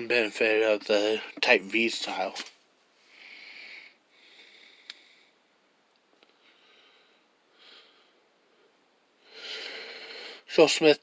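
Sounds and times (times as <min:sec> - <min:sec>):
faint breathing through nose: 0:03.0 - 0:05.4, 0:06.3 - 0:10.5.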